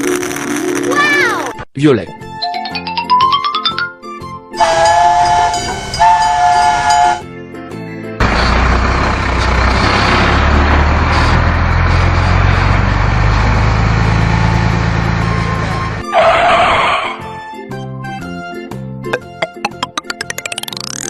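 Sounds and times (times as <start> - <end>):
horn chord blasts: 4.6 - 7.3
rumbling vehicle engine: 8.2 - 16.0.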